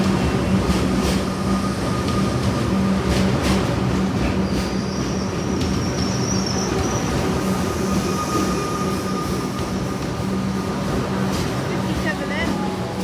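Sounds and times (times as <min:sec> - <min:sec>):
electric train hum: 0:00.0 - 0:13.0
high-pitched wheel squeal: 0:04.8 - 0:10.0.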